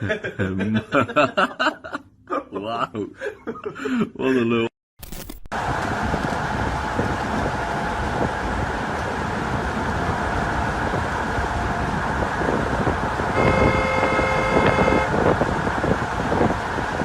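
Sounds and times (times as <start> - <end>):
engine rumble: 5.5 - 17.0
wind noise: 5.6 - 17.0
vehicle horn blast: 13.3 - 15.3.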